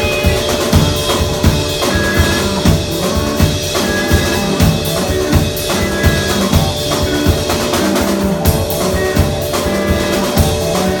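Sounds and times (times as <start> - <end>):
low drum thumps: 0.0 - 7.4
loud live music: 0.0 - 11.0.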